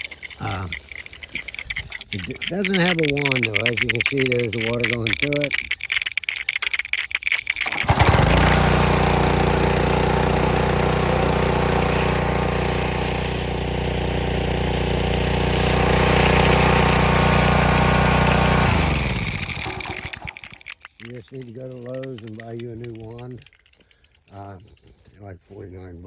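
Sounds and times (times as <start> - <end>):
pressure washer engine running: 0.0 - 0.8, 2.1 - 5.5, 7.6 - 20.6.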